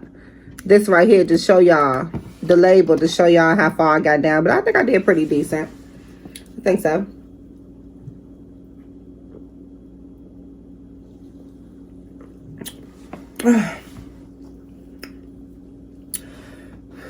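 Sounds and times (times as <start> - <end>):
low room hum: 0.0 - 17.0
clicks and mouth noises: 12.2 - 13.5.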